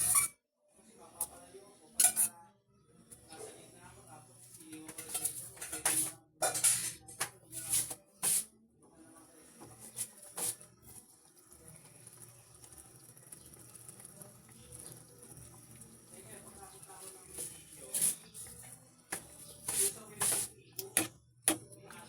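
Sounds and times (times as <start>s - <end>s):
kitchen utensils clinking: 2.0s - 2.3s, 4.7s - 8.4s, 17.2s - 22.0s.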